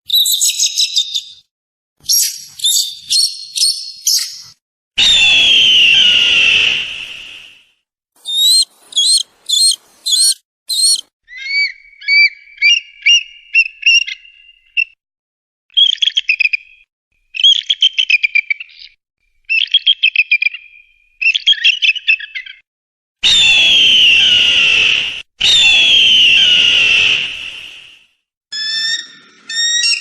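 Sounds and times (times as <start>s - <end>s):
eagle chirping and trilling: 0.1s - 1.4s, 2.0s - 4.6s, 8.2s - 14.3s, 28.5s - 30.0s.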